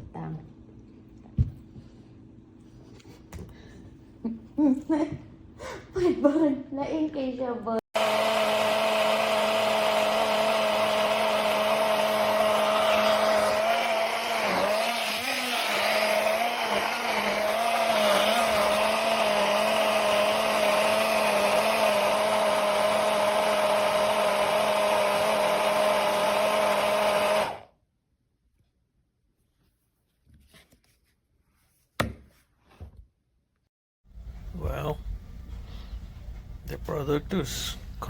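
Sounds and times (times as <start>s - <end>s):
blender motor whining: 8.0s - 27.8s.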